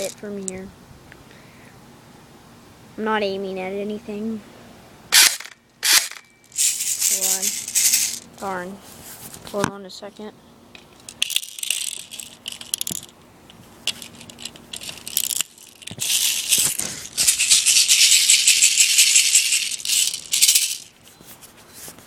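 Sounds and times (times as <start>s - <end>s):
bbs rattling in toy gun: 5.2s - 8.3s, 11.0s - 13.2s, 13.8s - 21.0s.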